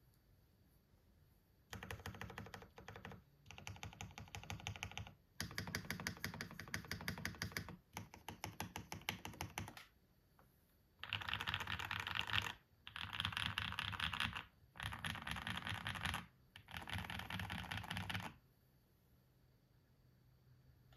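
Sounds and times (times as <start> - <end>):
typing on mechanical keyboard: 1.7 - 9.9, 11.0 - 18.4.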